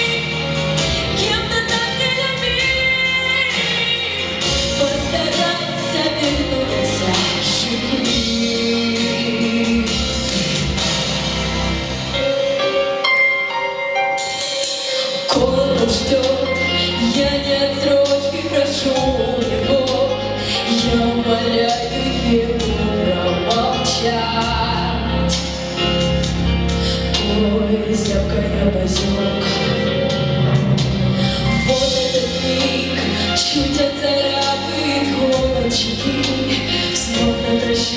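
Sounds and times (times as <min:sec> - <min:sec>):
instrumental accompaniment: 0:00.0 - 0:37.9.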